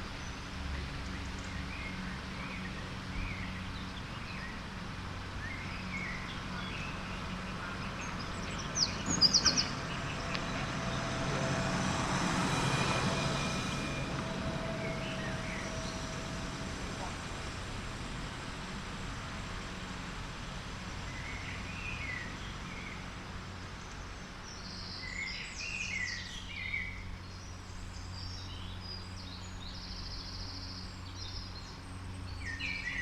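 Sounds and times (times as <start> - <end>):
low rumble: 0.0 - 24.8
birds chirping: 0.1 - 18.0.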